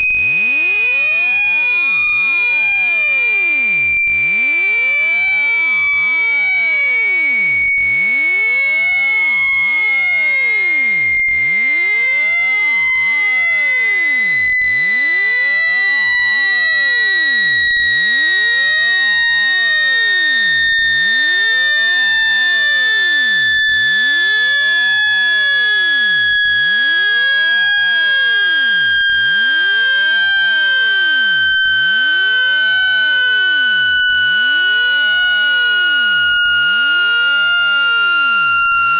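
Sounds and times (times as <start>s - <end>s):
high buzzy tone gliding down: 22.8s - 38.9s.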